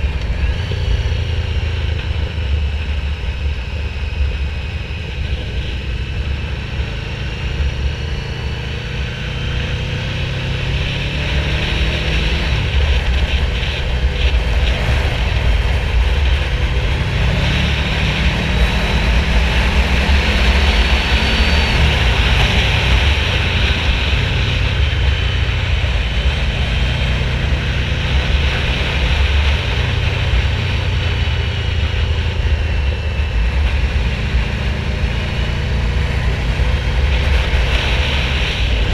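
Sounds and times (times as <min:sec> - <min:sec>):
motorcycle engine running: 0:00.0 - 0:38.9
wind rush: 0:09.2 - 0:38.9.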